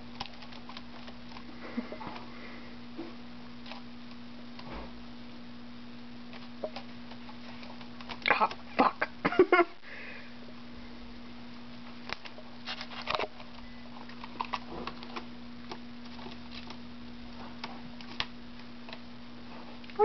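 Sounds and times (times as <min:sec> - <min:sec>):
bird pecking taps and rustles: 0:00.1 - 0:02.2, 0:06.3 - 0:08.7.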